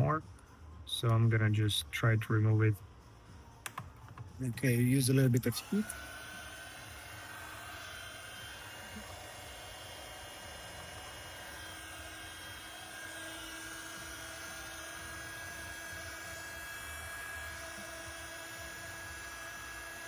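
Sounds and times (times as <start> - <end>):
heat gun blowing air: 4.6 - 20.0.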